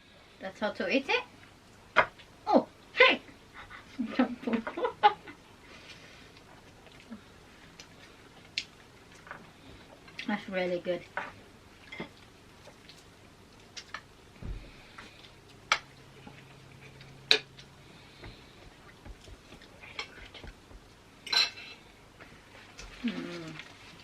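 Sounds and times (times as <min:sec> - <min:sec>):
cutlery clinking on plates: 0:21.3 - 0:21.8.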